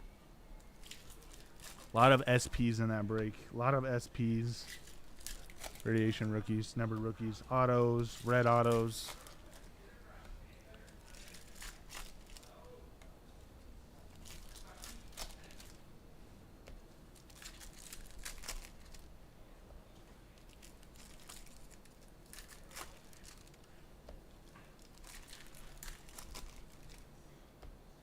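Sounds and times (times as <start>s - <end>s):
foil wrappers crinkling and tearing: 0.8s - 2.6s, 4.2s - 9.7s, 10.8s - 12.7s, 14.1s - 15.8s, 17.1s - 19.1s, 20.3s - 23.8s, 24.5s - 27.0s.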